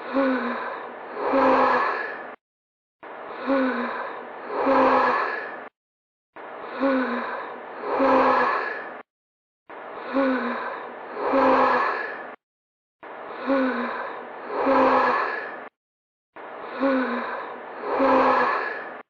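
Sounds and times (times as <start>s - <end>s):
person gasping and sighing: 0.0s - 2.3s, 3.4s - 5.7s, 6.7s - 9.0s, 13.4s - 15.6s, 16.7s - 19.0s.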